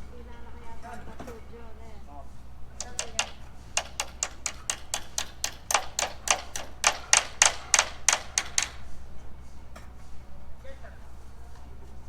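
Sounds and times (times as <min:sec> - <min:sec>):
hammer driving nails: 0:02.8 - 0:08.9.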